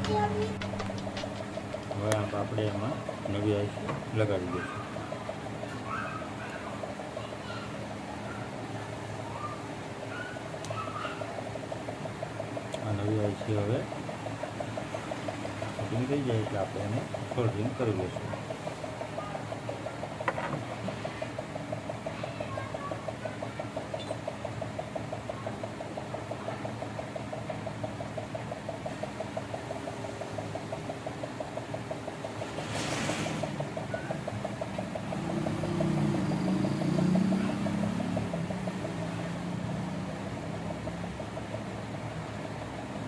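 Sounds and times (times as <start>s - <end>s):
pulsing machine hum: 0.0s - 43.0s
brief hiss: 32.6s - 33.5s.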